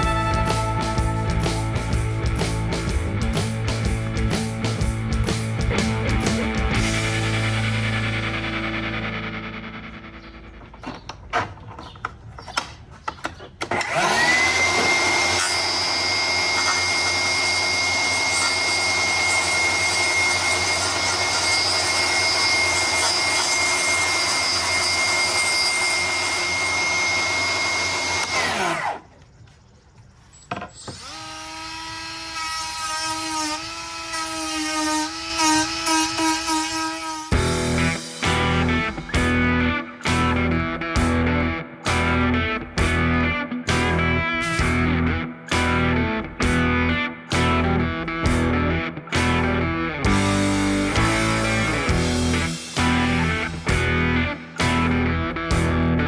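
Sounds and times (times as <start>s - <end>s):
power tool spinning: 13.6s - 29.2s, 30.5s - 40.5s.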